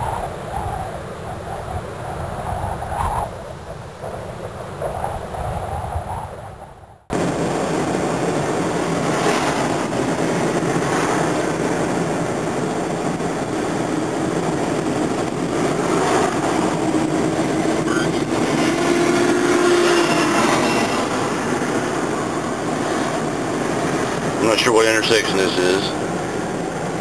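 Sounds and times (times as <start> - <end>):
vehicle road and engine noise: 7.1 - 27.0.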